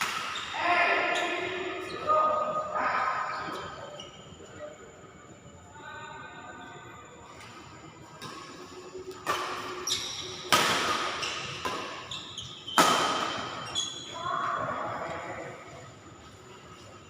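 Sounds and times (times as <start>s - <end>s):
racket hitting shuttlecock: 0.0s - 0.4s, 9.2s - 12.1s, 12.7s - 13.6s
shoe squeaks: 0.2s - 2.2s, 3.3s - 4.7s, 9.7s - 14.4s.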